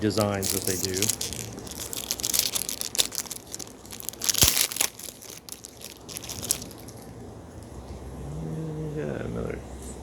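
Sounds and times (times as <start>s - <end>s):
card pack wrapper crinkling: 0.0s - 7.0s.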